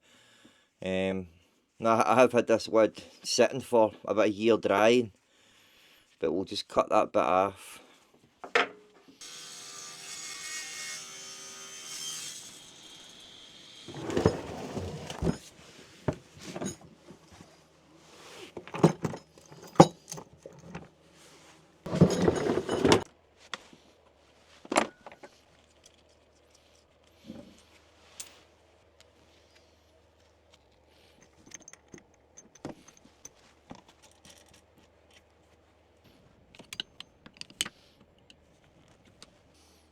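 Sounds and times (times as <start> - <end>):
wood and tools clattering: 13.8 - 23.9, 24.6 - 35.4, 36.5 - 39.4.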